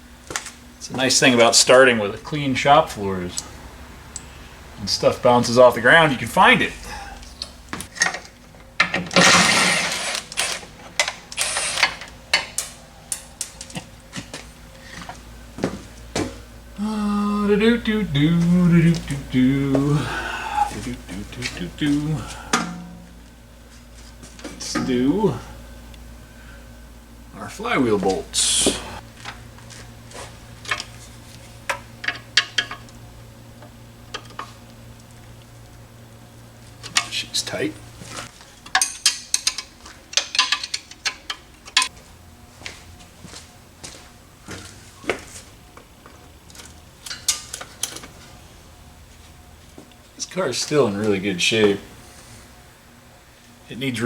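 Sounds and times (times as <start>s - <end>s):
metal tools clicking and clanking: 7.4s - 13.8s, 20.6s - 23.3s, 24.4s - 25.4s, 31.7s - 32.9s, 36.8s - 37.4s, 38.6s - 41.9s
power tool burst: 9.2s - 10.6s, 11.4s - 12.0s.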